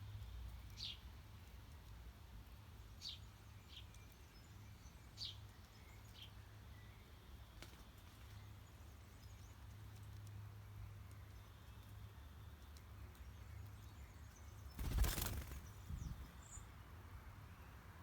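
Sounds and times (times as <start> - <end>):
songbird chirps: 0.0 - 18.0.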